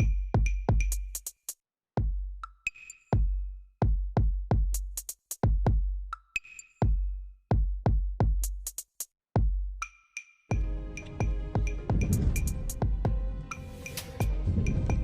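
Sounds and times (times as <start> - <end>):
deep kick drums: 2.0 - 2.4, 3.2 - 6.0, 6.8 - 8.6, 9.4 - 9.7, 10.6 - 13.4, 14.2 - 15.0
electronic music: 10.6 - 15.0
held synth notes: 10.6 - 15.0.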